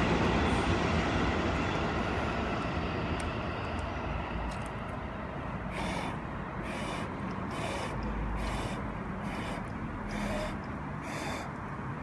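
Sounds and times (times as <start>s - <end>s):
low rumble: 0.0s - 6.4s.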